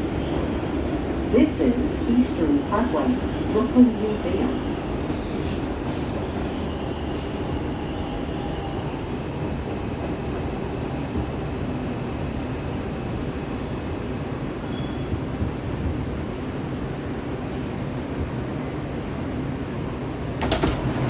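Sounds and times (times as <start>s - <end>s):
subway train rumbling: 0.0s - 21.0s
wheels squealing on rails: 14.6s - 15.3s.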